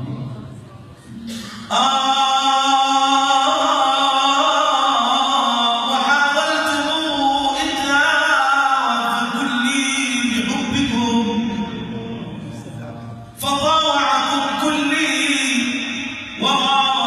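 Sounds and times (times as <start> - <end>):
man singing long ornamented notes: 1.6 - 17.0.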